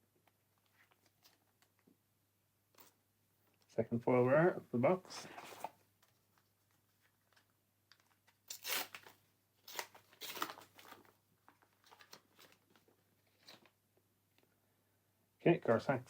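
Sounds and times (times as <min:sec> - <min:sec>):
wrapper crinkling: 0:08.0 - 0:13.7
foil pack tearing: 0:08.5 - 0:11.0.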